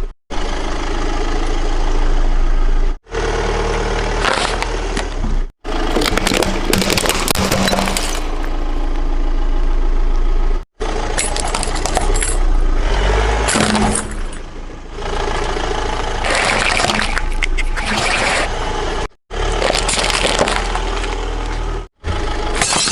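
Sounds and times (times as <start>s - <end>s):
car engine humming: 0.0s - 22.8s
tyre crushing crunchy objects: 4.1s - 8.5s, 19.3s - 22.9s.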